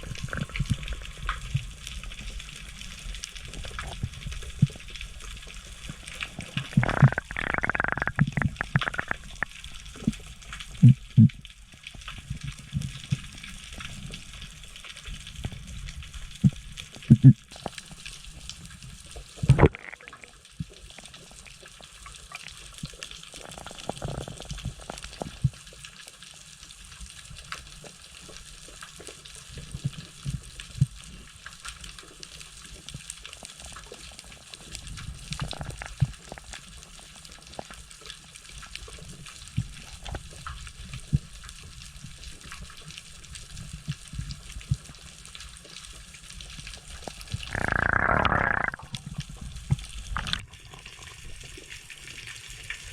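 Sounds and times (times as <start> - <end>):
crackling clicks underwater: 0.0 - 52.9.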